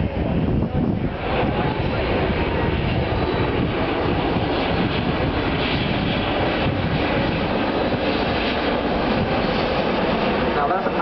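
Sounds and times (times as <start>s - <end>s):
jet engines flyby: 0.0s - 11.0s.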